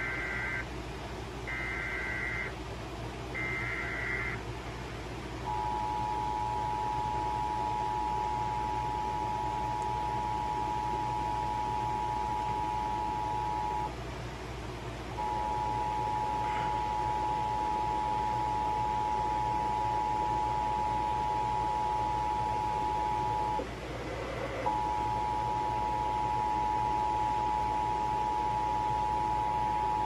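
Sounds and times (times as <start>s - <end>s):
radio hiss: 3.4s - 4.4s, 16.2s - 17.0s.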